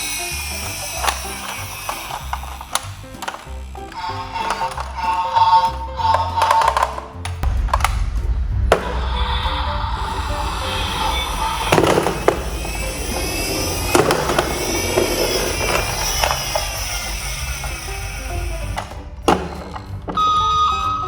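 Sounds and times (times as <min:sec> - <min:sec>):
toy cars rattling down a ramp: 0:00.0 - 0:07.4, 0:11.2 - 0:20.3
background music: 0:00.0 - 0:21.0
sharp knocks: 0:06.4 - 0:09.2.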